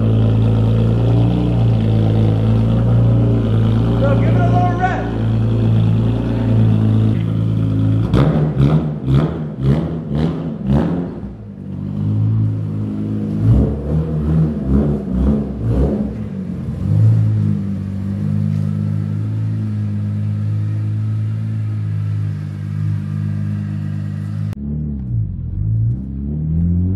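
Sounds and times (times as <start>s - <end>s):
car engine idling and revving: 0.0s - 26.9s.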